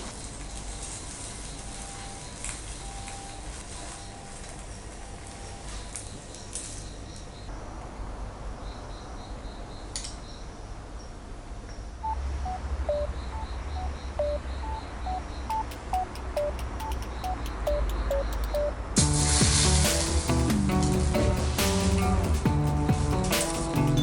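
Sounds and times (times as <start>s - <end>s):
bass: 12.0s - 24.0s
quick light ticks: 15.5s - 18.7s
plucked melody notes: 15.6s - 24.0s.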